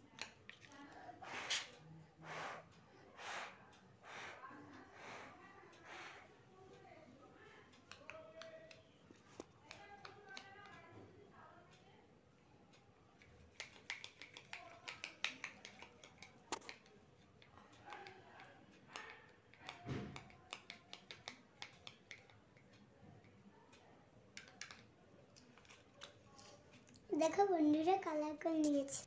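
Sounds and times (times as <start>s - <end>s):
paper strip clicks and taps: 13.5s - 22.7s, 24.4s - 24.9s.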